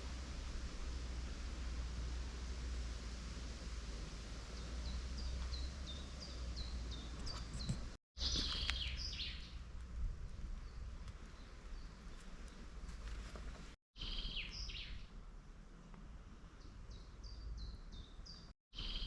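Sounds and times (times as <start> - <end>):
small birds chirping: 4.4 - 9.6, 10.5 - 13.2, 14.0 - 15.1, 16.5 - 19.0.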